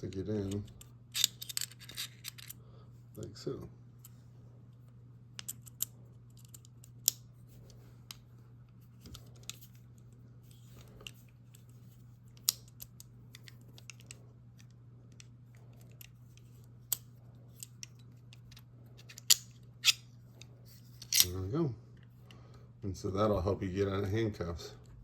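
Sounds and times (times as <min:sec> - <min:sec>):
steady low hum: 0:00.0 - 0:25.0
handcuff key clicking and scraping: 0:00.4 - 0:02.6, 0:17.6 - 0:21.4.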